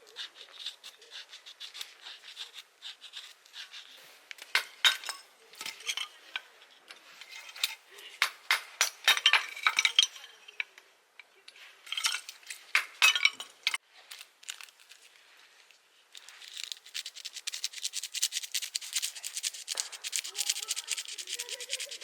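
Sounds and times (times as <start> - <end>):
rapid scratching: 16.2 - 22.0.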